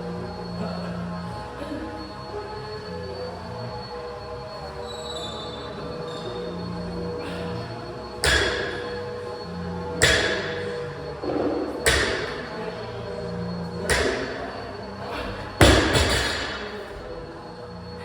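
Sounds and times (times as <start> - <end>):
sharp ringing knocks: 8.2 - 8.9.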